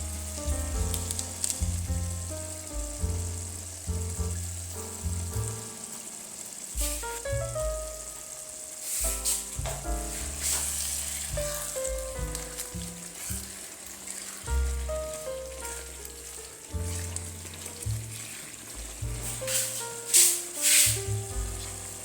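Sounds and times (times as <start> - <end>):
background music with bass line: 0.0 - 5.9, 6.7 - 13.6, 14.5 - 22.0
steady high hiss: 0.0 - 22.0.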